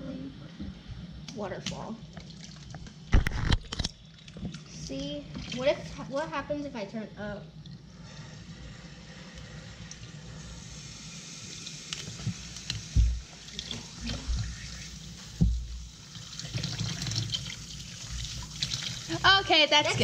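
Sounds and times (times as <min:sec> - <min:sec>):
tap water running into sink: 0:11.3 - 0:20.0.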